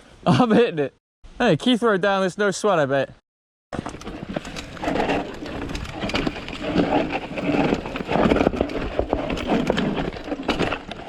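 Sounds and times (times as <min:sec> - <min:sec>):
bike rattling over bumps: 0:03.8 - 0:11.0
bike tyre noise on dirt: 0:03.8 - 0:11.0.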